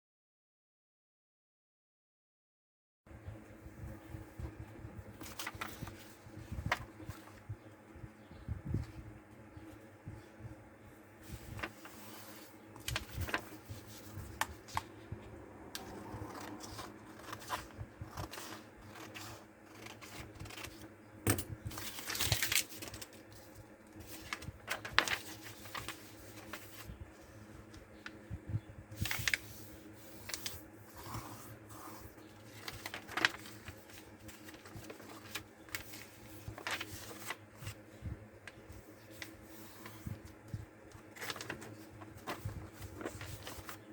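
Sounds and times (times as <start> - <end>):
paper rustling and creasing: 4.4 - 7.5, 10.9 - 15.2, 15.8 - 21.0, 21.6 - 28.3, 28.9 - 43.9.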